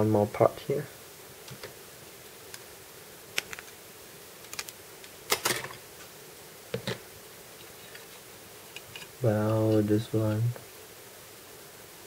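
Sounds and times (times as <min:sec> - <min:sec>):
faint steady hum: 0:00.0 - 0:12.0
plastic parts clicking: 0:04.5 - 0:05.8.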